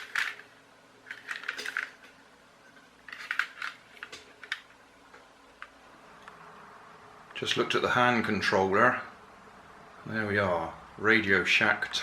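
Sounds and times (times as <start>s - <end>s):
hard plastic toy clicking and rattling: 0.0s - 2.1s, 3.1s - 4.8s.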